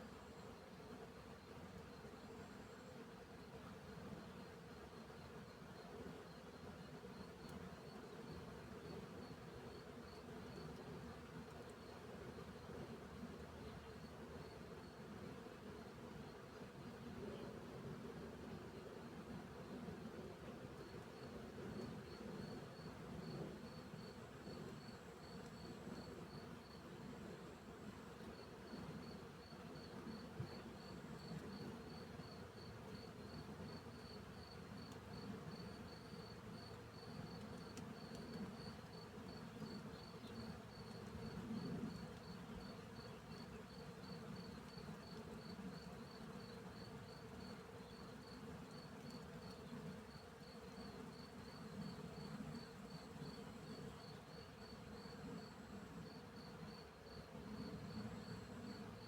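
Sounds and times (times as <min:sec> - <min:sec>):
cricket chirping: 0:06.3 - 0:10.7, 0:28.4 - 0:59.0.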